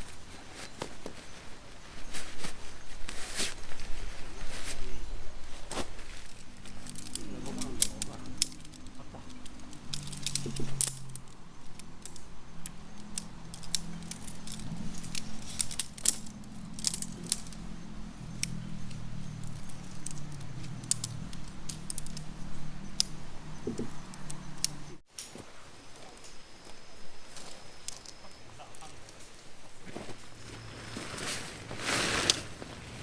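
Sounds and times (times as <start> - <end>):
metallic clinks and rattles: 6.2 - 25.4.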